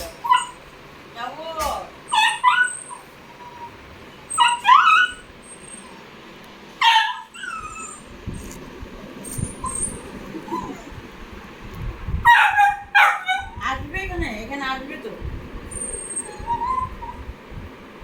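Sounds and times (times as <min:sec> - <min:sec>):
puppy whining and yelping: 0:00.0 - 0:00.6, 0:02.1 - 0:06.1, 0:06.8 - 0:08.1, 0:09.3 - 0:11.0, 0:15.7 - 0:17.3.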